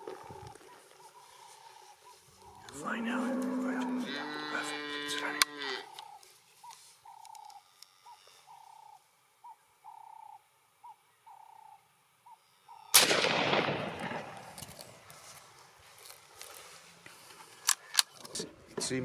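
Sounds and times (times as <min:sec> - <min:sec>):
bird calling: 0:00.0 - 0:13.0
rifle shot with echo: 0:13.0 - 0:14.7.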